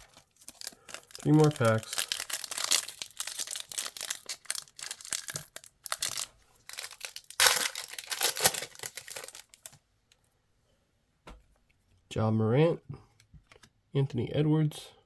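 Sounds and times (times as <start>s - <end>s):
plastic wrapper tearing and crinkling: 0.0s - 9.8s.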